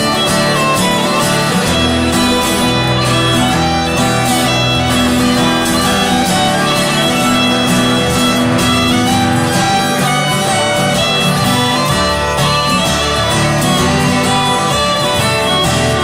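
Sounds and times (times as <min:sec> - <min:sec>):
fiddle melody: 0:00.0 - 0:16.0
strummed acoustic guitar: 0:00.0 - 0:16.0.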